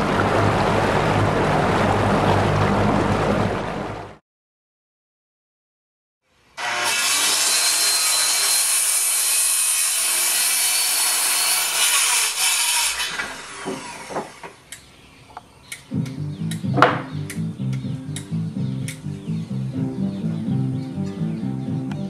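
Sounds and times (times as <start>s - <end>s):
saw cutting wood: 6.6s - 14.7s.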